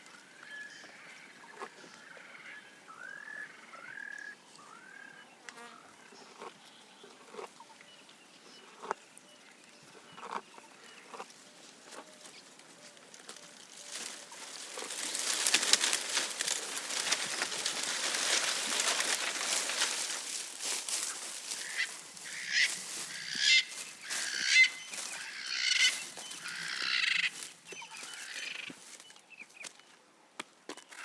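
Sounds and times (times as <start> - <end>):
leaves and twigs rustling: 11.3 - 29.9.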